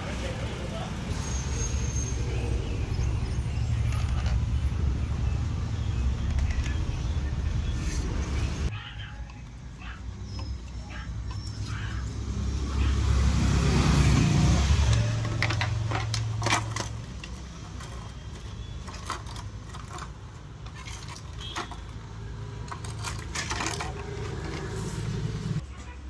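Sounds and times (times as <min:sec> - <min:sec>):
small metal tools clinking: 0:14.8 - 0:22.0, 0:22.6 - 0:24.9.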